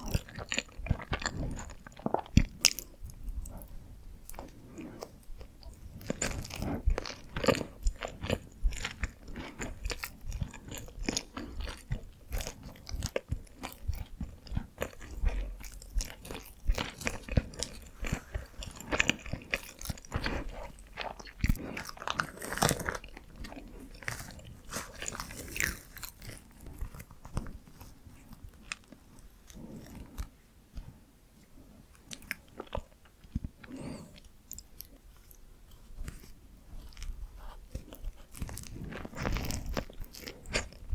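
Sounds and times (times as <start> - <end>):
close biting and chewing: 0.0 - 30.9, 31.6 - 40.9.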